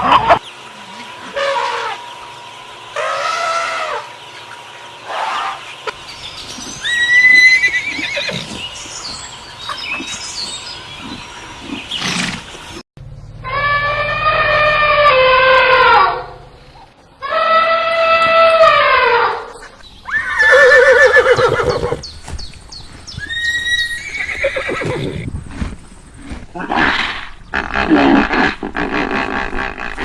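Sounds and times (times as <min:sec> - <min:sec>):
horse neighing: 0:06.8 - 0:08.6, 0:20.1 - 0:22.0, 0:23.2 - 0:25.3.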